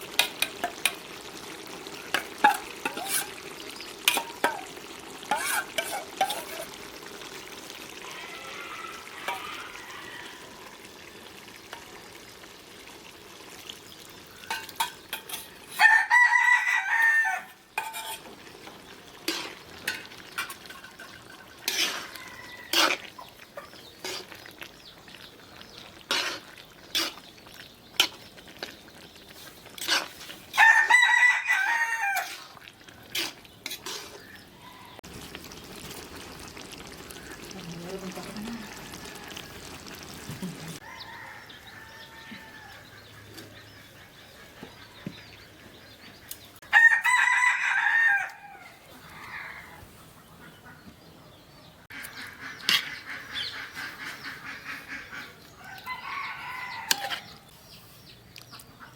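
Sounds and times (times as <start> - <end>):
utensil scraping in a pan: 0.0 - 7.0, 8.1 - 10.4, 14.4 - 16.0, 17.0 - 34.4, 52.0 - 55.3, 56.4 - 58.2
faint frying: 0.0 - 50.4
rooster crowing: 8.0 - 10.8, 15.7 - 17.6, 21.9 - 23.0, 30.6 - 32.5, 38.3 - 39.8, 40.8 - 43.0, 46.6 - 49.8, 55.6 - 57.4.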